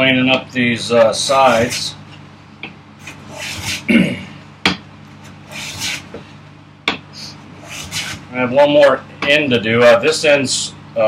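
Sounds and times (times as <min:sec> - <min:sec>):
hand plane shaving wood: 0:03.0 - 0:03.9, 0:05.5 - 0:06.1, 0:07.6 - 0:08.2.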